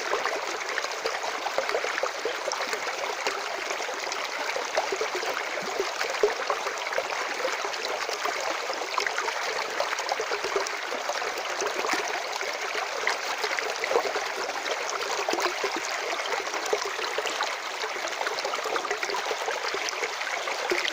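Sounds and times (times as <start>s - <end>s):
running water splashing: 15.3s - 20.9s.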